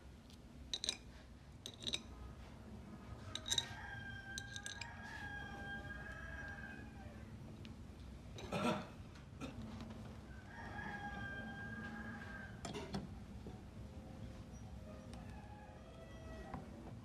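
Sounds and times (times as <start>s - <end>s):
rooster crowing: 3.1s - 7.4s, 10.2s - 12.7s, 14.9s - 16.8s.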